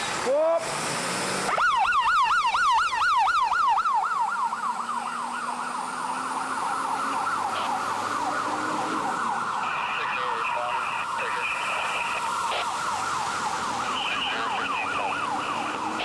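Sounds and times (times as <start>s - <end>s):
siren yelping: 1.5s - 16.0s.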